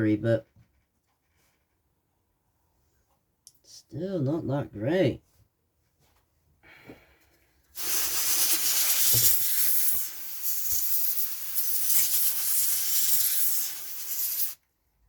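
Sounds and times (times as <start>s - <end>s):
compressed air can hissing: 7.8s - 14.6s.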